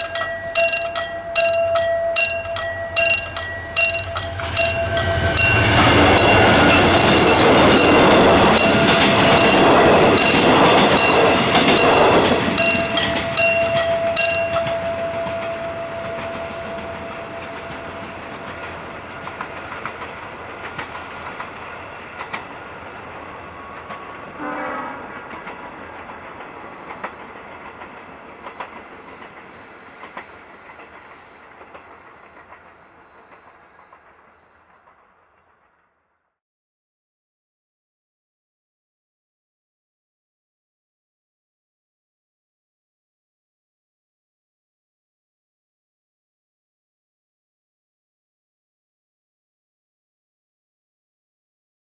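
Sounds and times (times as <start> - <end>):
crossing warning bell dinging: 0.0 - 35.1
train wheels clattering on rails: 0.0 - 35.7.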